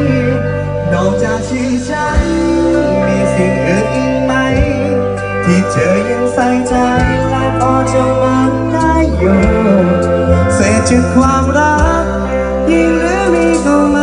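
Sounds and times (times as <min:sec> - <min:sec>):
held bass notes: 0:00.0 - 0:14.0
live band playing: 0:00.0 - 0:14.0.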